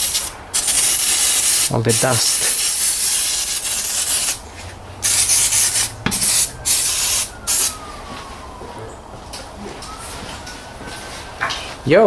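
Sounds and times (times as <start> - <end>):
aerosol spray hissing: 0.0 - 4.4, 5.0 - 7.7.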